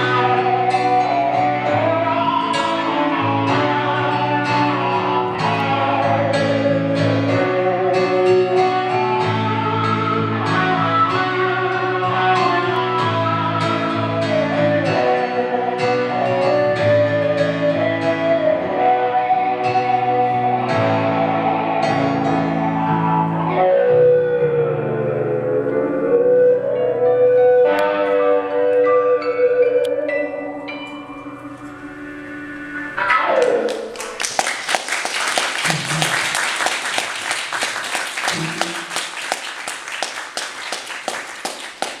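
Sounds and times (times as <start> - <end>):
opera-style singing voice: 0.0 - 21.1
picked guitar notes: 0.0 - 34.2
audience applauding: 33.2 - 42.0.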